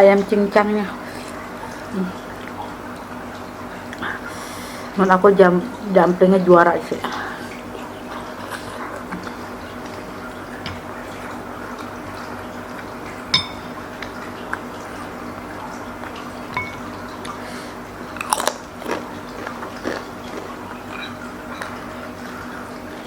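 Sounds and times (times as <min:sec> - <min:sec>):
chewing and biting food: 0:18.1 - 0:21.8.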